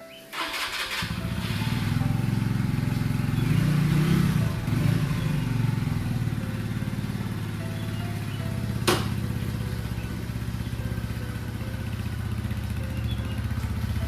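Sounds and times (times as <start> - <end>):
motorcycle engine idling: 0.3 - 14.0.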